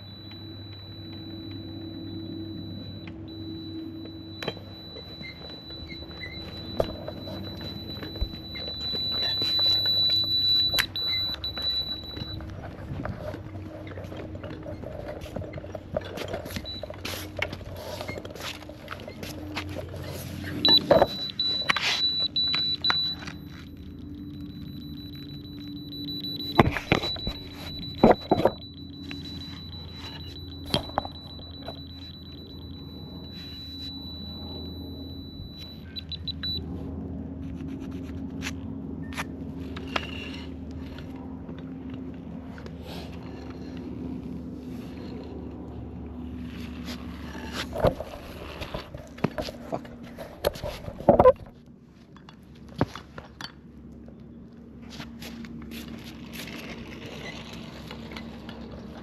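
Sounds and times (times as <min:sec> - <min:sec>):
laser receiver beeping: 0:00.0 - 0:12.6, 0:20.5 - 0:36.6
steady low hum: 0:00.0 - 0:52.5
knocks clicks and clinks of handling: 0:20.6 - 0:34.6.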